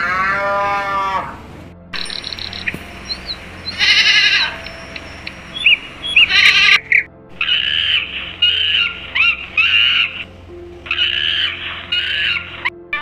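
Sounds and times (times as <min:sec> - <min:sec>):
farm animal bleating: 0:00.0 - 0:01.3, 0:02.2 - 0:06.8
background music: 0:00.0 - 0:13.0
bird chirps: 0:02.0 - 0:10.2.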